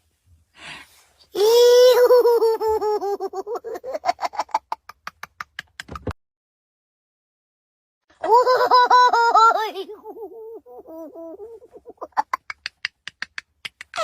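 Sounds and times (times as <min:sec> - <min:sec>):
sped-up giggling sound effect: 0:10.0 - 0:14.0.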